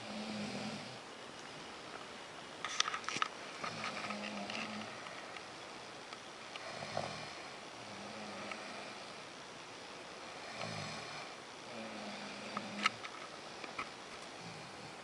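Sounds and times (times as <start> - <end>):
people snoring: 0.0 - 1.0, 3.6 - 5.0, 6.6 - 9.2, 10.2 - 13.0, 14.4 - 15.0.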